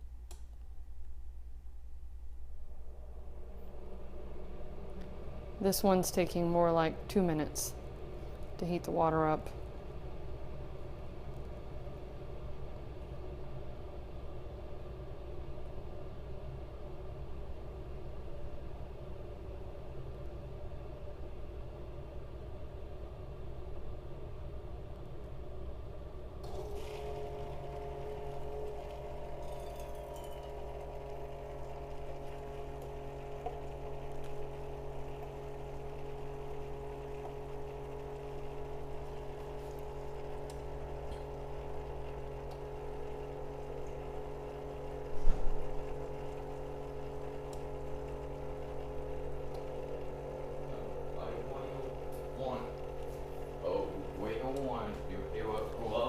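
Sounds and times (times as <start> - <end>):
coffee maker pump humming: 0.0 - 56.0
hot water pouring into cup: 26.4 - 56.0.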